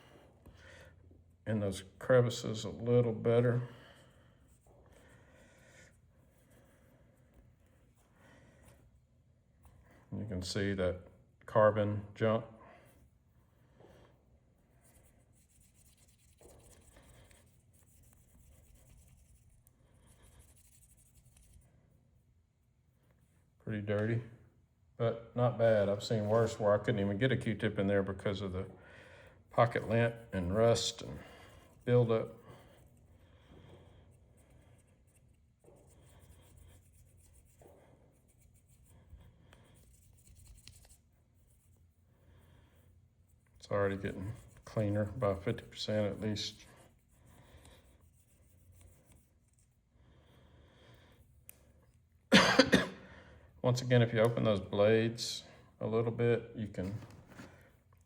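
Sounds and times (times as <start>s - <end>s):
cotton swab scratchy rubbing: 12.9s - 24.1s, 25.6s - 28.6s, 29.3s - 52.3s.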